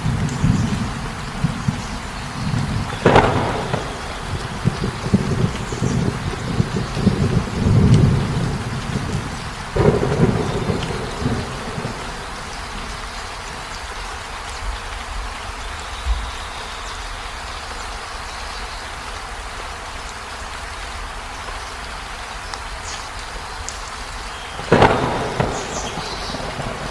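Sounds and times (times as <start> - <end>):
sharp thunderclap: 0.0 - 13.1, 24.6 - 26.9
thunder rumbling: 0.0 - 14.0, 24.3 - 26.9
heavy rain: 0.0 - 26.9.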